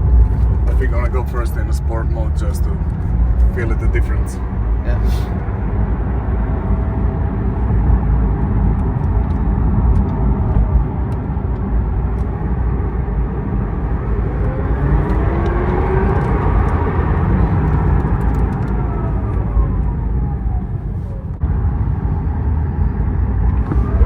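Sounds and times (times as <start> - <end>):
road and tyre noise: 0.0 - 24.0.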